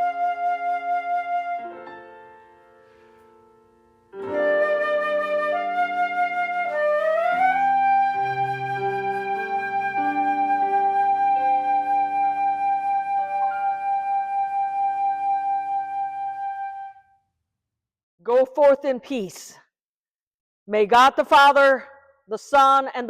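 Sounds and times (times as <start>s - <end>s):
flute-like melody with vibrato: 0.0s - 2.2s, 4.2s - 17.2s.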